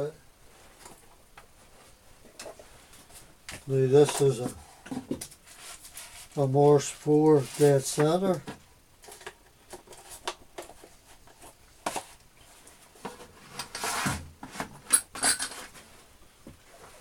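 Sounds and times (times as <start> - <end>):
metal tools clinking and knocking: 14.9 - 15.7.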